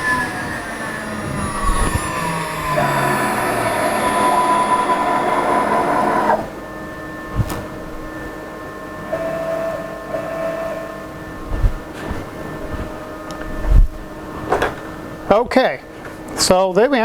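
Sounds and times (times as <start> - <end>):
cnc router motors whining: 0.0 - 11.5
quiet hum: 0.0 - 16.8.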